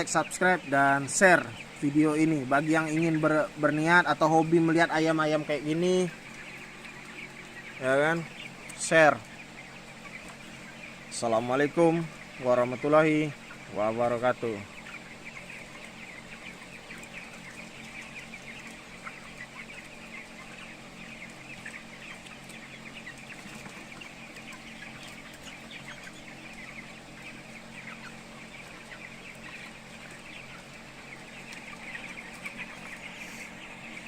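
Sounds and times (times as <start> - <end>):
chickens cheeping and clucking: 0.0 - 34.0.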